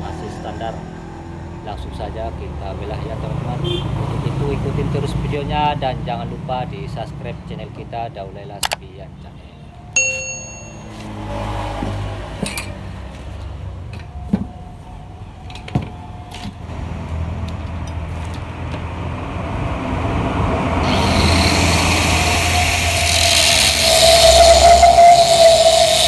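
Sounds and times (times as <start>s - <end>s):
cutting disc grinding steel: 20.8s - 26.0s
power tool humming: 20.8s - 26.0s.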